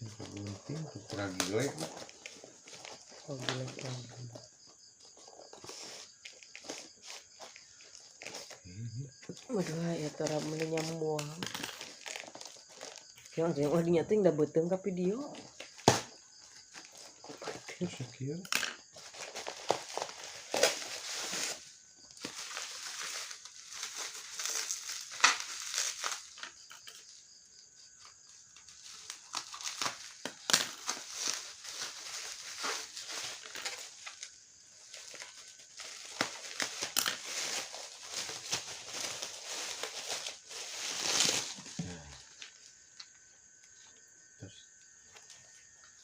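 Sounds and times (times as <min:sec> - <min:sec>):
plastic packaging crinkling: 0:09.7 - 0:13.3, 0:19.0 - 0:27.1, 0:28.4 - 0:42.6.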